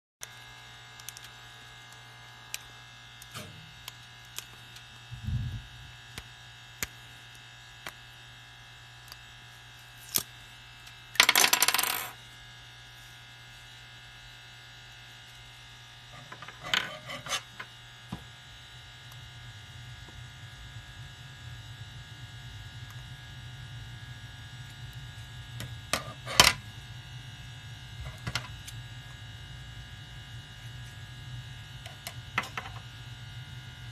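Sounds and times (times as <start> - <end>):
low steady hum: 0.2 - 33.9.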